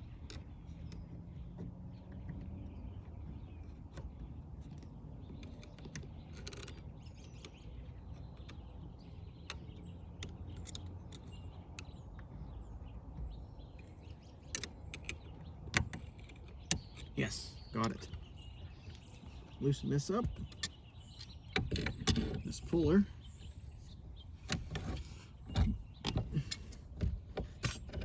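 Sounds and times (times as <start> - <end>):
light clicks and rattles: 0.0 - 28.0.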